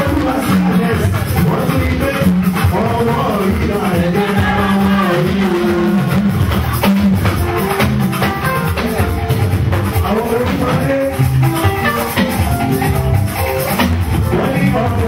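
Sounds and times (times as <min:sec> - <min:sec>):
drums and shakers beat: 0:00.0 - 0:15.0
sustained pitched notes: 0:00.0 - 0:15.0.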